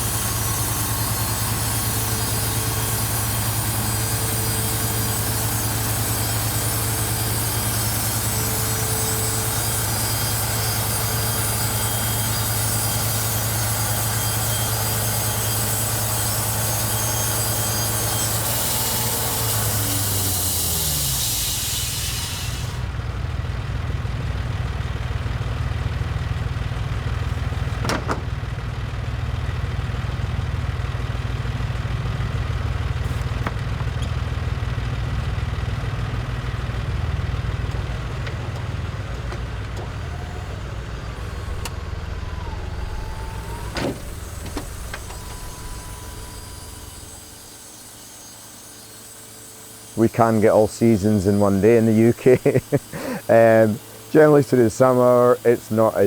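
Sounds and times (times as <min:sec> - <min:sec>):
high hiss of saw: 0:00.0 - 0:22.9, 0:40.1 - 0:56.0
sawmill engine hum: 0:00.0 - 0:56.0.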